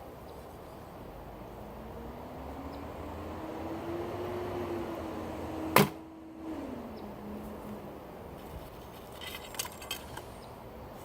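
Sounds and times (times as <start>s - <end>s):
distant truck engine hum: 0.0s - 8.8s.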